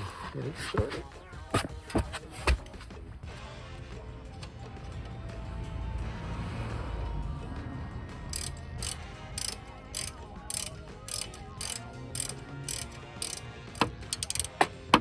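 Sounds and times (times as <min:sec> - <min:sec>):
ratchet wrench clicking: 0:08.3 - 0:14.7.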